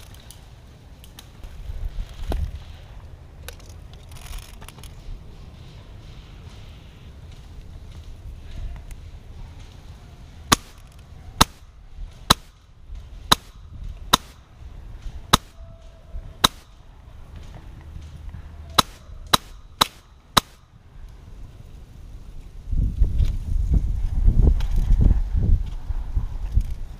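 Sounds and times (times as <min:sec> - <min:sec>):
wind rumble on microphone: 0:00.0 - 0:19.8, 0:20.8 - 0:26.9
airsoft rifle shots: 0:10.5 - 0:14.5, 0:15.3 - 0:15.6, 0:16.4 - 0:16.8, 0:18.7 - 0:20.7.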